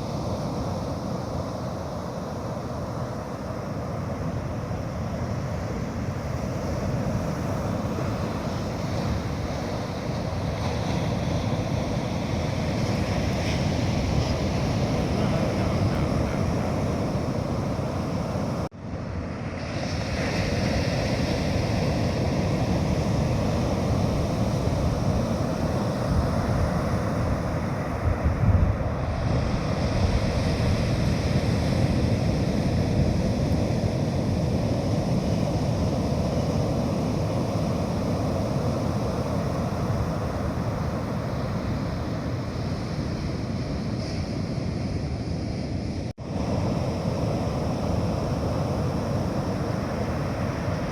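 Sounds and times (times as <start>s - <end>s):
sea surf washing onto beach: 0.0s - 50.9s
wind buffeting microphone: 5.2s - 18.7s, 20.2s - 44.7s.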